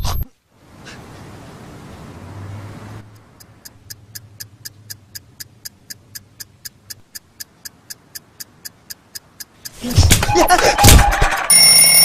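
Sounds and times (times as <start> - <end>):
clock ticking: 3.0 - 11.0.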